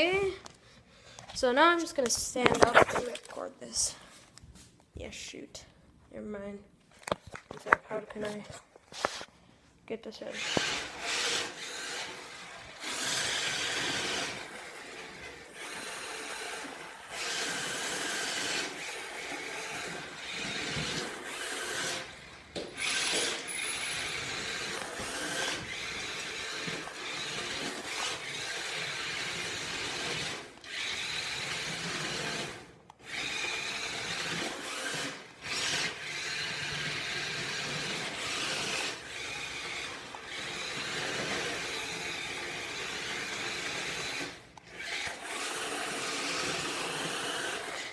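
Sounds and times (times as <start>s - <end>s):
toy car motor whirring: 10.3s - 47.9s.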